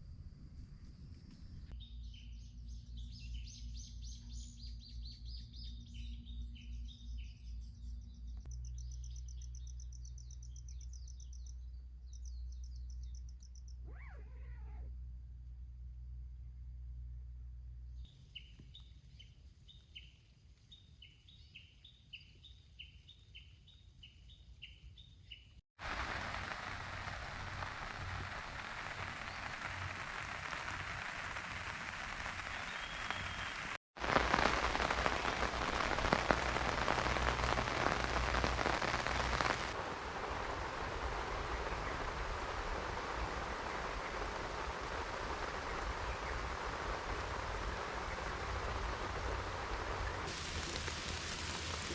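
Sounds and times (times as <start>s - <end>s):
steady rain falling: 25.8s - 51.9s.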